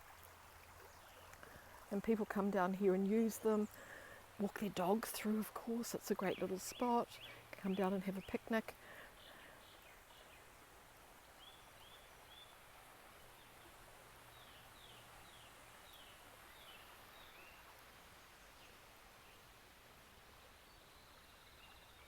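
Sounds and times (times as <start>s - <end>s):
low steady hiss: 0.0s - 22.0s.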